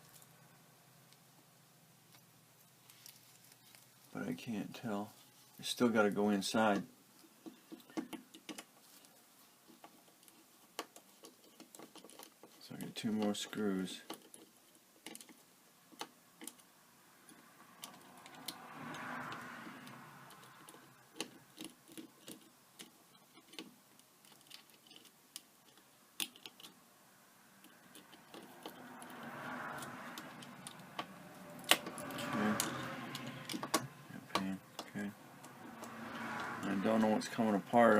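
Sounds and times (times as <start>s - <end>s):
plastic parts being handled: 5.2s - 18.6s.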